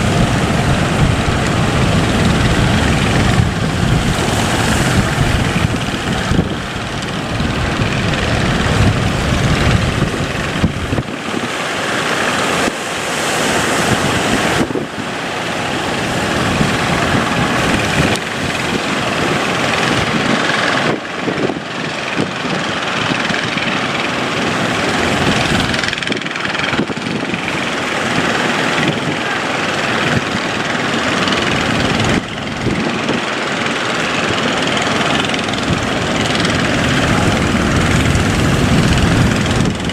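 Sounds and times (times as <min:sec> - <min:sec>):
boat engine running: 0:00.0 - 0:39.9
wash of water: 0:00.0 - 0:39.9
wind buffeting microphone: 0:00.0 - 0:39.9.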